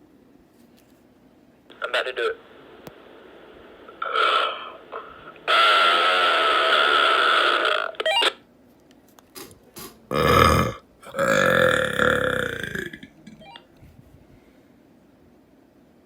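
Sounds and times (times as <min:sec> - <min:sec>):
radio hiss: 0:01.7 - 0:07.6
burp over radio speaker: 0:10.1 - 0:13.6.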